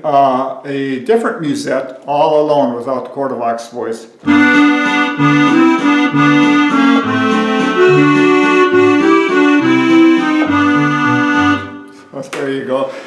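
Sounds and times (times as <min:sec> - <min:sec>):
accordion melody: 0:04.2 - 0:12.0
accordion bass and chords: 0:04.2 - 0:12.1.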